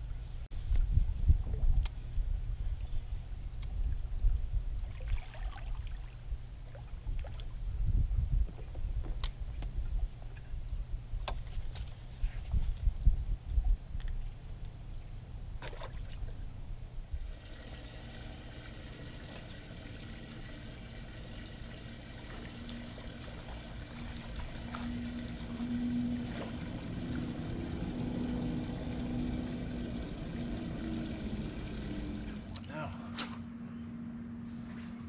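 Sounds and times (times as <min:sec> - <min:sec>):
water rumbling against boat: 0:15.5 - 0:32.6
electric motor humming: 0:17.4 - 0:32.6.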